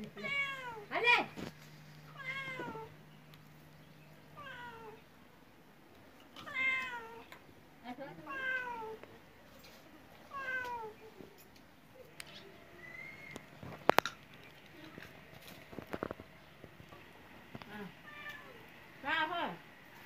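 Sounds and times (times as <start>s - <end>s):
cat meowing: 0.2s - 0.9s, 2.2s - 2.9s, 4.4s - 5.0s, 6.4s - 7.3s, 8.2s - 9.0s, 10.3s - 11.0s, 17.8s - 18.6s.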